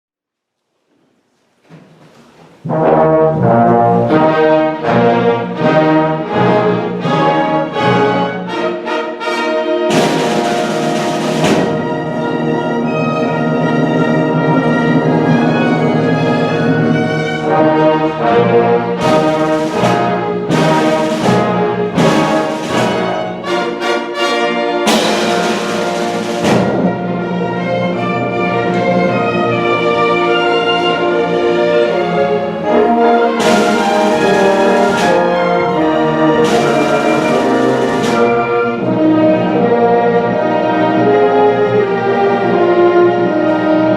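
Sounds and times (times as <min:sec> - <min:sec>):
symphony orchestra playing: 0:02.4 - 0:43.9
brass section chords: 0:02.6 - 0:13.6, 0:14.3 - 0:28.2, 0:29.5 - 0:43.9
orchestral accented hits: 0:09.7 - 0:39.8.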